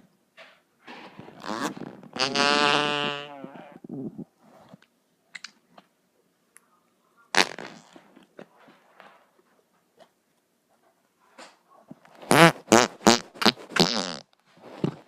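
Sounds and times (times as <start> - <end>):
fart sound effect: 1.1 - 4.3, 7.4 - 8.0, 12.2 - 14.3.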